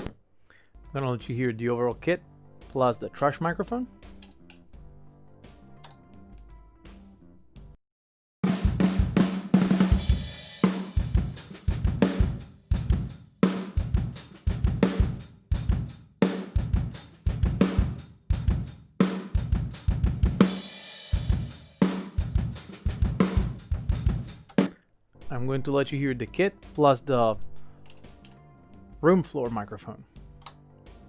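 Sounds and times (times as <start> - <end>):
drum kit playing a groove: 8.4 - 24.8.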